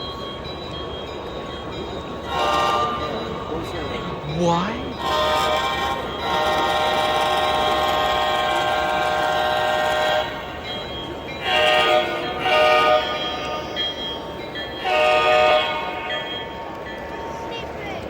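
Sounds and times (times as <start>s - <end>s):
train horn blasts: 2.3s - 3.3s, 5.0s - 10.6s, 11.4s - 13.6s, 14.8s - 16.3s.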